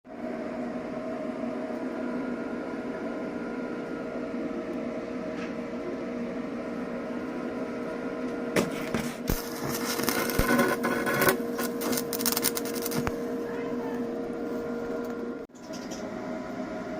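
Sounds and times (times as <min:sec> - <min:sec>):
welding machine humming: 0:01.7 - 0:15.5
welding arc crackling: 0:09.3 - 0:13.2.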